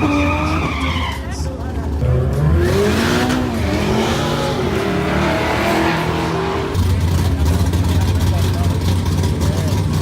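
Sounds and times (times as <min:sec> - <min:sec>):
tyres squealing: 0:00.0 - 0:01.5
racing car engine: 0:00.0 - 0:10.0
deep engine rumble: 0:01.3 - 0:10.0.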